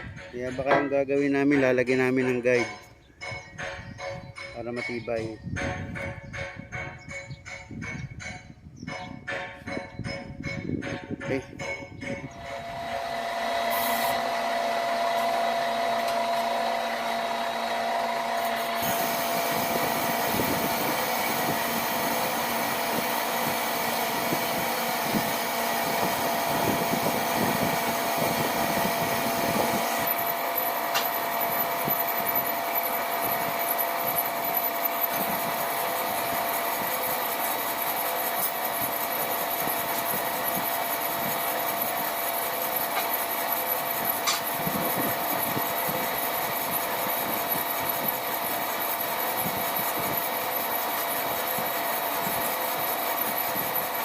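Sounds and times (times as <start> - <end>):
power tool cutting metal: 12.3 - 54.0.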